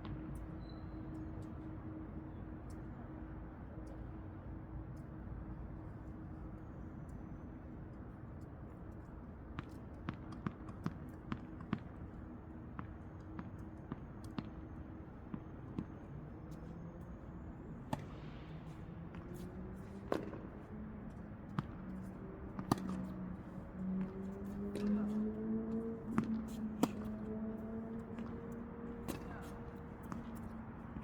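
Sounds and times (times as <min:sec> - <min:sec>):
balls bouncing on court: 0:09.6 - 0:16.7, 0:19.1 - 0:31.0
tennis balls popping off rackets: 0:17.7 - 0:31.0.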